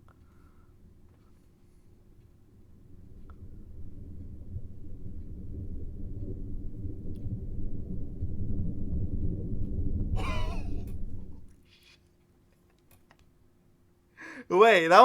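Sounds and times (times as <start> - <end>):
low rumbling drone: 2.5 - 11.5.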